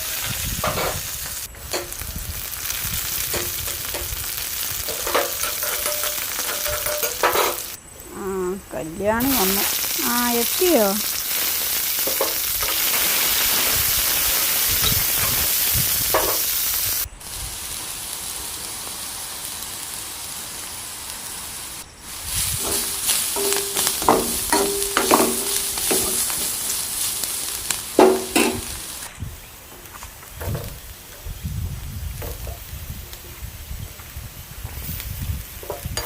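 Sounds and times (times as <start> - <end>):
food sizzling in hot oil: 0.0 - 8.1, 9.1 - 29.7, 30.3 - 36.0
spatula clinking against pan: 4.9 - 7.6.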